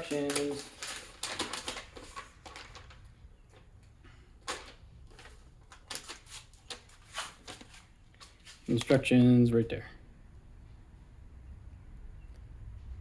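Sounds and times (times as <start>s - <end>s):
paper rustling: 0.0s - 9.1s.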